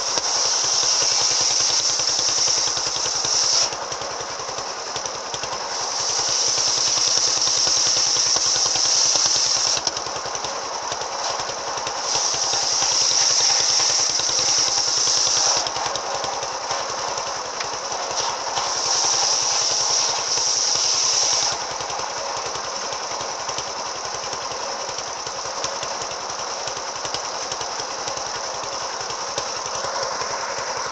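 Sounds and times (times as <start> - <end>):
brush cutter engine revving: 0.0 - 23.8.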